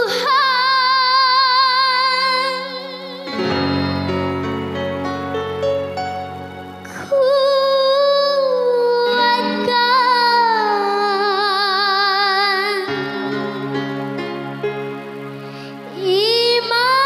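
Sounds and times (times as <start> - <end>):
girl singing in high voice: 0.0 - 4.0, 7.0 - 13.4
electronic keyboard chords: 2.0 - 17.0.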